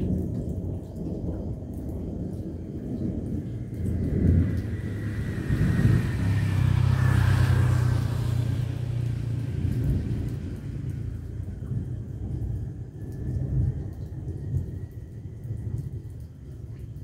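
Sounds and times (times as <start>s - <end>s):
deep low rumble: 0.0s - 7.2s.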